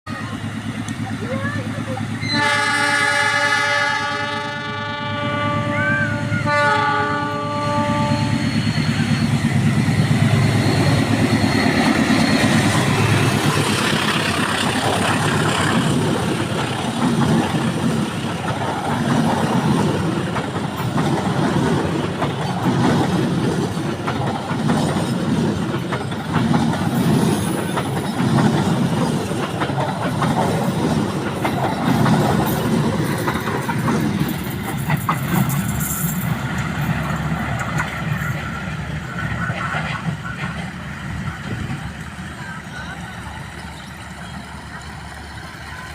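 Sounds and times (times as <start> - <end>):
locomotive horn: 2.2 - 8.5
train wheels clattering: 7.8 - 42.4.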